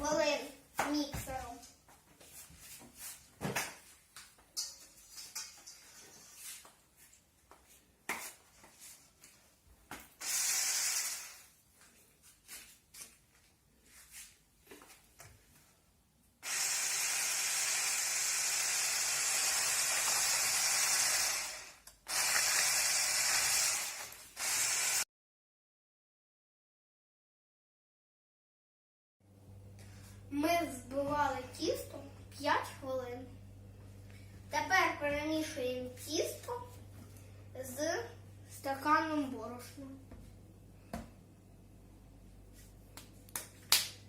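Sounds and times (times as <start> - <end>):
electric hand mixer whirring: 10.2 - 11.5, 16.4 - 25.0.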